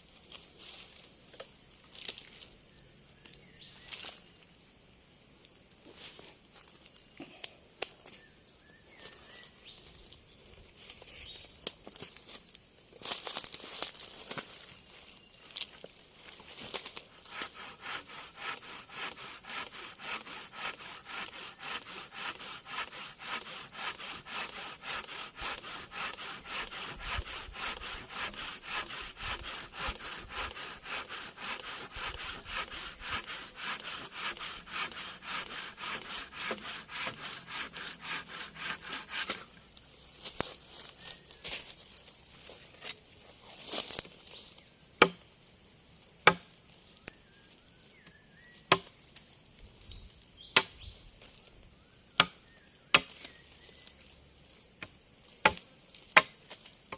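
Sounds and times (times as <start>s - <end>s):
hand saw cutting wood: 17.1s - 39.5s.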